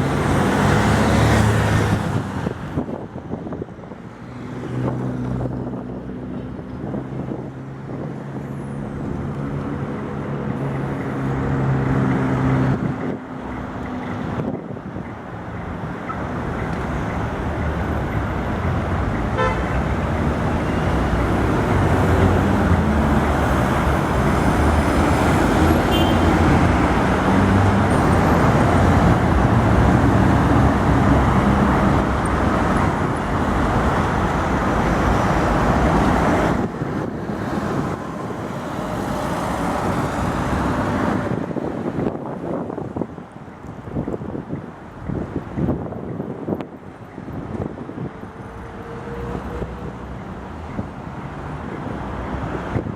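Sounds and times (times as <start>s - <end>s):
tram rumbling over tracks: 0.0s - 52.9s
tram toot: 10.5s - 36.0s.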